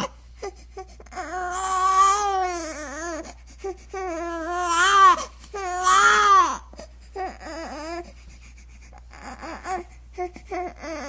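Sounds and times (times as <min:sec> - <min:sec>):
baby crying: 0:01.1 - 0:03.3, 0:04.0 - 0:08.0, 0:09.1 - 0:09.9, 0:10.5 - 0:11.0.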